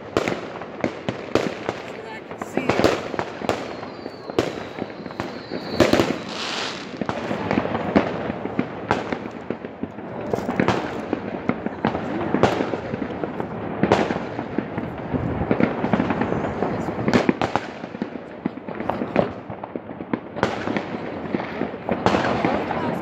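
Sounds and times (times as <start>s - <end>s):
fireworks bangs and cracks: 0.0s - 23.0s
high firework whistle: 2.6s - 7.2s.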